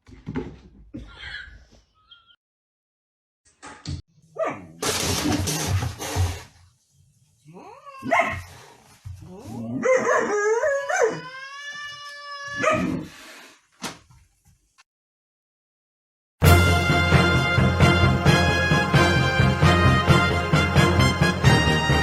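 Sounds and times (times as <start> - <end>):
dog yelping: 7.9 - 8.5, 9.8 - 11.5, 12.5 - 13.0
dog howling: 9.7 - 13.0.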